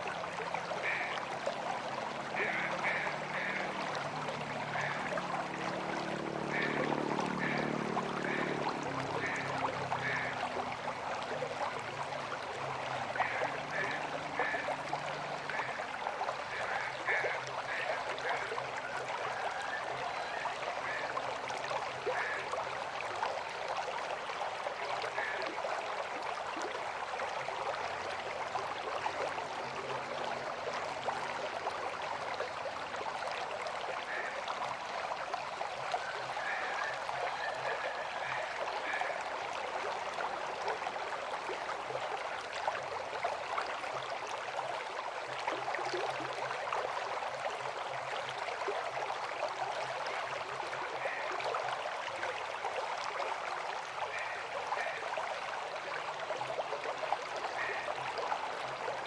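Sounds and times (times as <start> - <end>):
river water rushing and gurgling: 0.0 - 59.0.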